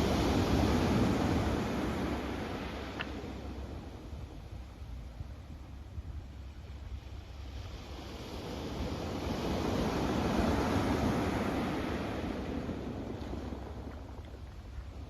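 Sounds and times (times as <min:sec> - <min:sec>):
sea wave breaking: 0:00.0 - 0:03.6, 0:07.3 - 0:14.4
wind rumble on microphone: 0:00.0 - 0:15.0.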